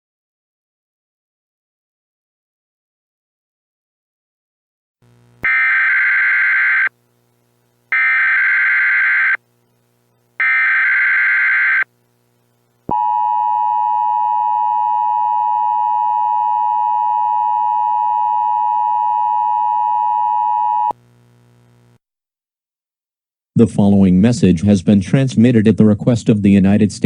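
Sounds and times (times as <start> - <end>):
digital data bursts: 8.0 - 9.4, 10.4 - 11.9
two-tone attention signal blare: 10.4 - 11.9.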